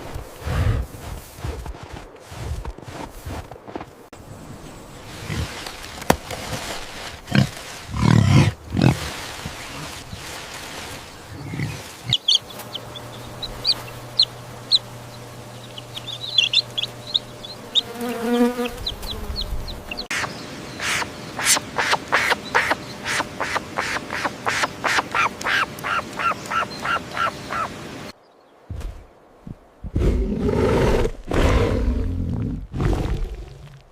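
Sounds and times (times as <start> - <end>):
hen clucking: 11.3 - 27.8.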